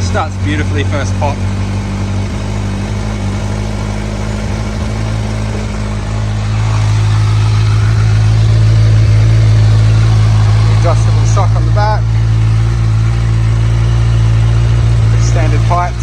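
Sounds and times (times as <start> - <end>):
motorcycle engine idling: 0.0 - 16.0.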